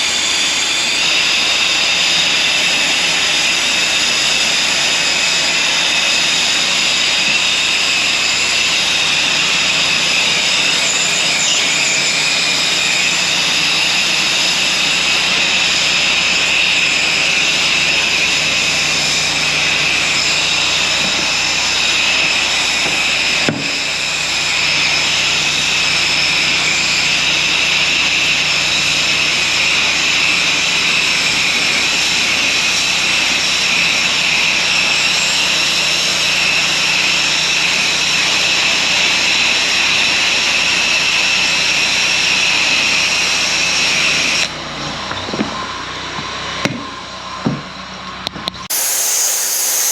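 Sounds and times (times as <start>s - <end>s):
pressure washer spraying water: 48.7s - 49.9s.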